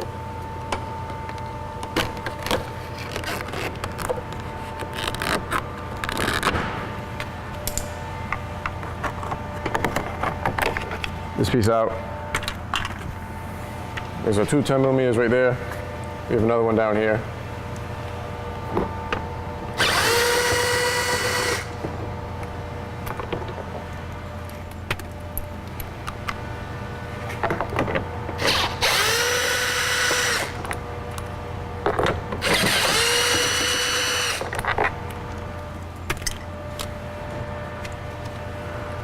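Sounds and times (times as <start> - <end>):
power driver whining: 19.7 - 21.9, 28.3 - 30.8, 32.3 - 35.2.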